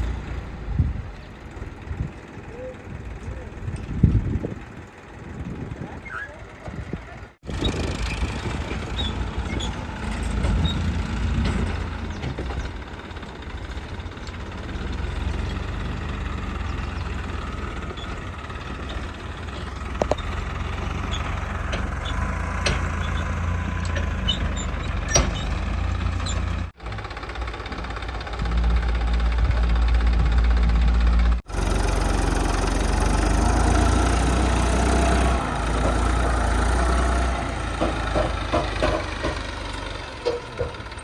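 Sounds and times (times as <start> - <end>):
diesel engine running: 0.0 - 41.0
sharp knocks: 34.6 - 41.0.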